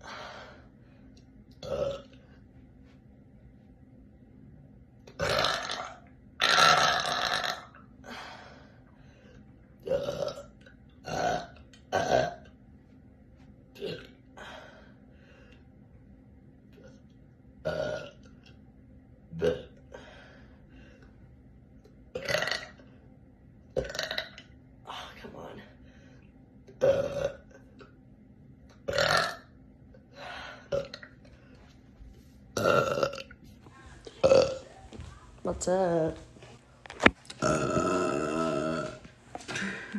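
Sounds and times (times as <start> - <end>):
woman belching: 1.6 - 2.2, 5.2 - 7.8, 9.8 - 12.5, 13.8 - 14.2, 17.6 - 18.2, 19.4 - 19.7, 22.2 - 22.8, 23.8 - 24.4, 26.8 - 27.5, 28.9 - 29.5, 32.6 - 33.4, 34.2 - 34.6, 37.4 - 39.0
woman burping: 1.6 - 2.2, 5.2 - 7.8, 9.8 - 12.5, 13.8 - 14.2, 17.6 - 18.2, 19.3 - 19.8, 22.2 - 22.7, 23.8 - 24.4, 26.8 - 27.6, 28.9 - 29.5, 32.6 - 33.4, 34.2 - 34.6, 37.4 - 39.9.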